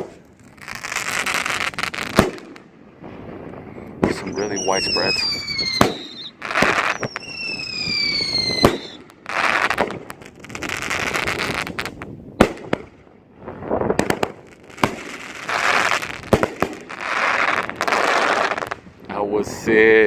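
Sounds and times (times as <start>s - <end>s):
crackling firework stars: 0.0s - 20.0s
firework reports: 0.0s - 20.0s
firework whistle: 4.1s - 9.6s.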